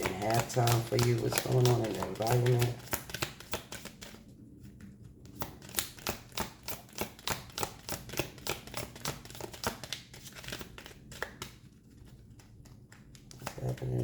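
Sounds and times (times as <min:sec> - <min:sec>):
cards being shuffled: 0:00.0 - 0:14.0.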